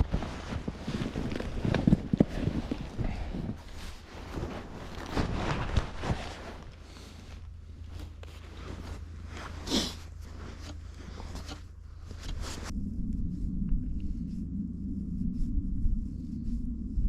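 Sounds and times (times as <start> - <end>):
rustling of gear: 0.0 - 12.7
steady low rumble: 0.0 - 17.0.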